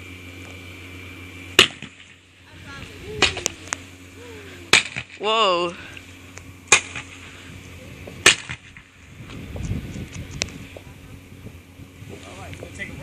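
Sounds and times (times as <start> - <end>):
firework crack: 1.6 - 2.2, 4.7 - 5.2, 6.7 - 7.2, 8.2 - 9.0.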